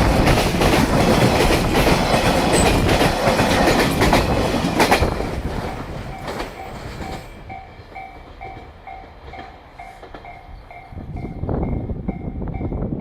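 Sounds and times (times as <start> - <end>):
train wagons clattering over rail joints: 0.0 - 11.4
level-crossing warning bell: 6.1 - 12.9.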